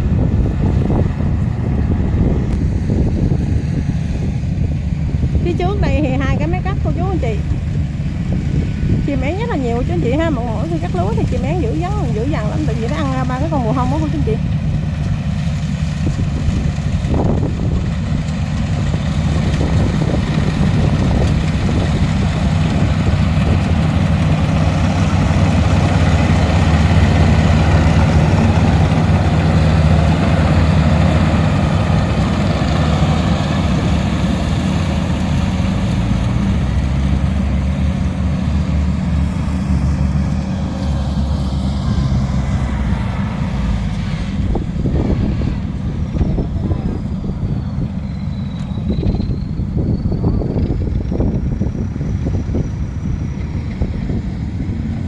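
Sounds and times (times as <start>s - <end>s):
harvester engine humming: 0.0s - 55.0s.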